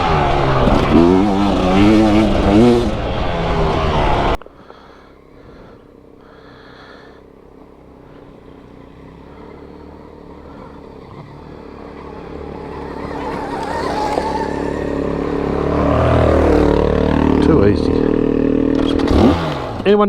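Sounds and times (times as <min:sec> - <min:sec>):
dirt bike engine running: 0:00.0 - 0:20.0.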